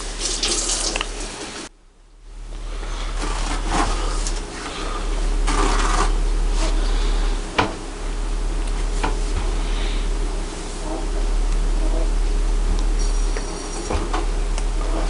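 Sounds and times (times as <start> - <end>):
steady low hum: 0.0 - 15.0
rubbing and light scraping: 3.0 - 7.5.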